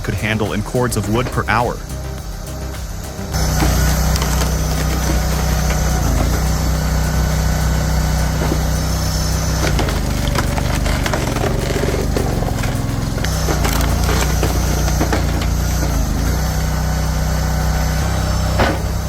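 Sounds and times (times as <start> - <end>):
engine hum: 0.0 - 19.0
wood splintering and crushing: 9.6 - 16.5.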